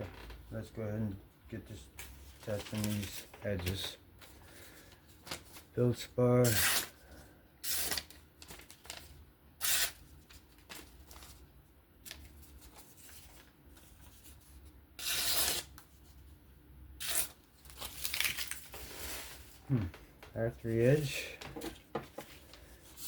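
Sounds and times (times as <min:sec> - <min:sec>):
knife slicing through paper: 0:15.0 - 0:15.7.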